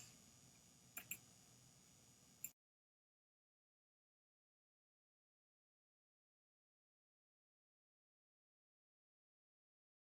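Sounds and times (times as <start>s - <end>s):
small clicks: 0.0s - 1.3s.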